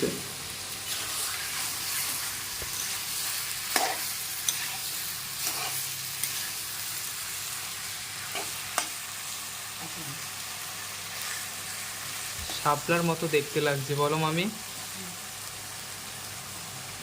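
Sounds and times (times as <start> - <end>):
food sizzling in oil: 0.0 - 17.0
spatula scraping a pan: 0.8 - 6.6.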